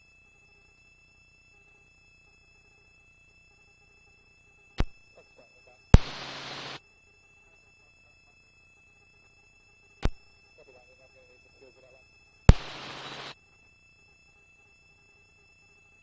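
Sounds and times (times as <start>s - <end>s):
faint electronic tones: 0.0s - 16.0s
open microphone hiss: 4.8s - 8.7s, 9.6s - 13.4s.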